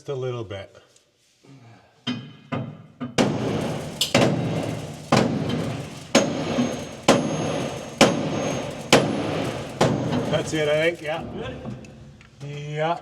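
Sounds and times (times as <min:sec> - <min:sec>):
hammer blows on metal: 0:03.2 - 0:10.5.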